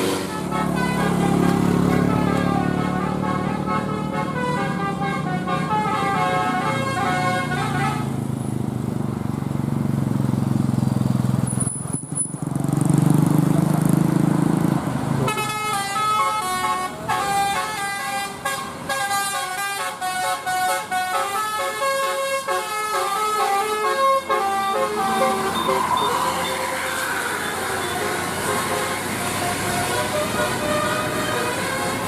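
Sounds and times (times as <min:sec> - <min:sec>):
multi-tone bus horn tune: 0:00.0 - 0:08.3, 0:15.2 - 0:32.0
bus engine rumbling: 0:00.0 - 0:32.0.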